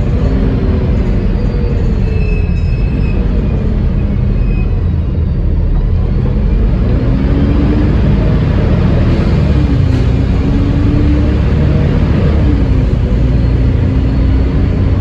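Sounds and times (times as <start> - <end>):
bus engine rumbling: 0.0 - 15.0
gearbox whine: 0.0 - 15.0.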